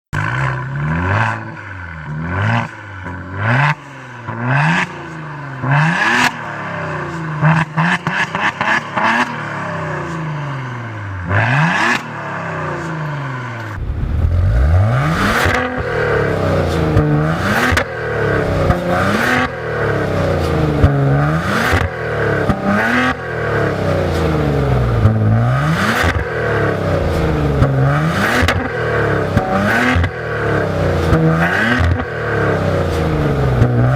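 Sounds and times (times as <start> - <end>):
car engine revving: 0.2 - 33.9
exhaust cracks: 13.6 - 33.9.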